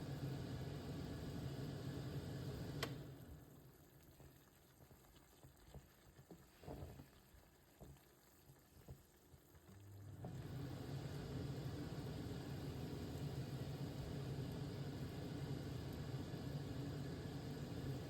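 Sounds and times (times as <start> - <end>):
mince simmering with bubbling pops: 0.0 - 18.0
click: 2.8 - 3.0.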